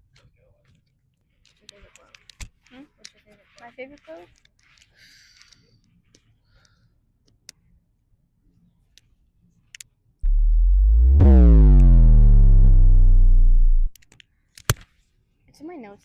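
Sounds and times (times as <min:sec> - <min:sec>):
deep synthesized tone sliding down: 0:10.2 - 0:13.9.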